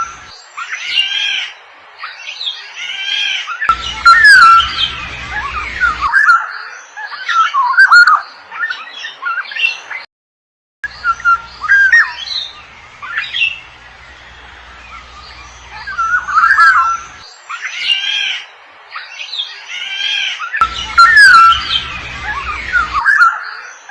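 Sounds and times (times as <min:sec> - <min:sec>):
orioles chirping and squawking: 0:02.2 - 0:09.8, 0:10.8 - 0:23.9.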